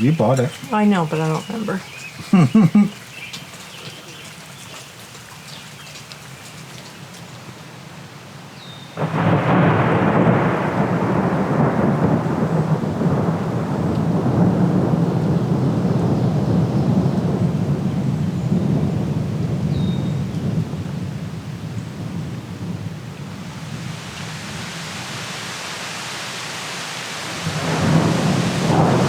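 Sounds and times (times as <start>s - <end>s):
faint scattered ticks: 0.0s - 7.4s
heavy rain: 0.0s - 29.0s.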